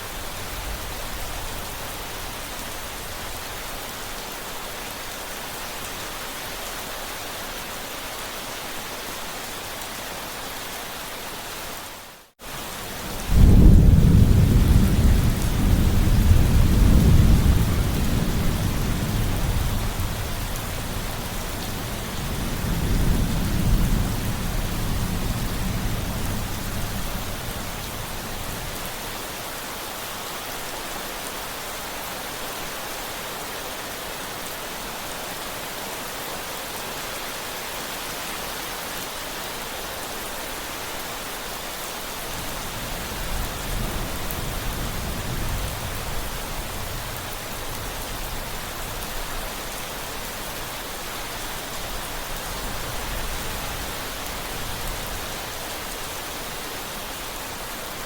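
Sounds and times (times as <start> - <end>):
steady rain: 0.0 - 58.0
thunder rumbling: 13.0 - 28.5.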